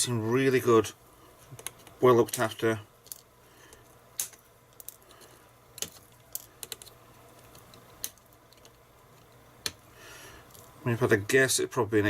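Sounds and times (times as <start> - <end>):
light clicks and taps of small parts: 1.4 - 9.8.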